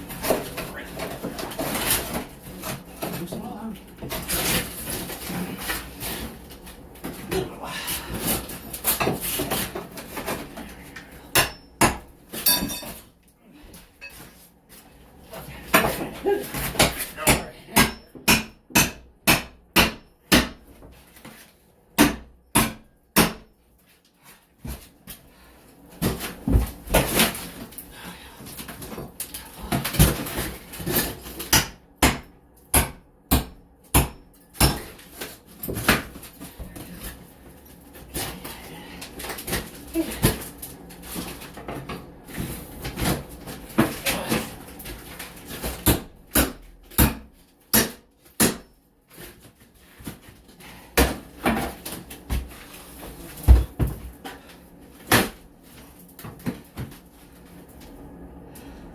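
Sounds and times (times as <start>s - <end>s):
scraping and prying: 0.0s - 13.2s, 33.9s - 57.5s
hammer strikes: 16.8s - 20.6s.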